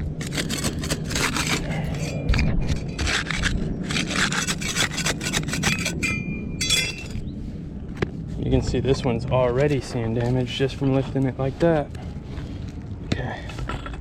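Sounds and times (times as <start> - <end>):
tool scraping under shingles: 0.0 - 7.3.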